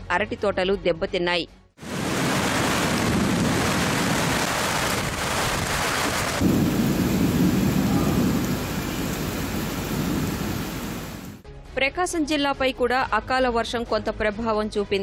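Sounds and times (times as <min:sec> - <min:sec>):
heavy rain: 0:01.8 - 0:11.4
low thunder rumble: 0:01.9 - 0:11.4.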